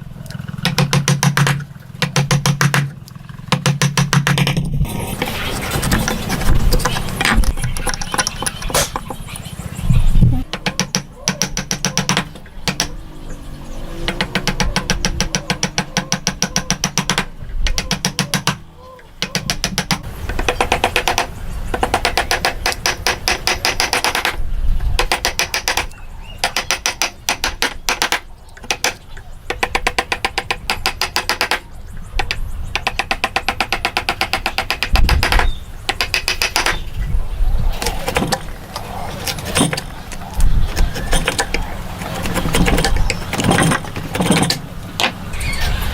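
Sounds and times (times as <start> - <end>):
hand saw cutting wood: 4.4 - 8.0.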